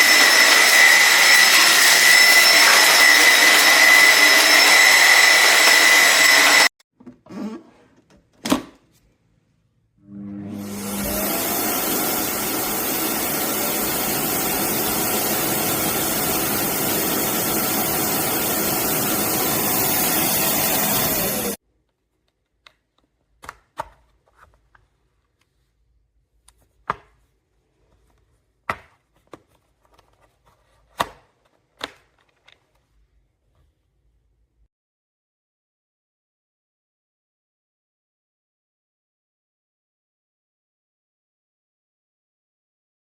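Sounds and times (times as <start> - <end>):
cordless vacuum running: 0.0 - 6.7, 10.1 - 21.6.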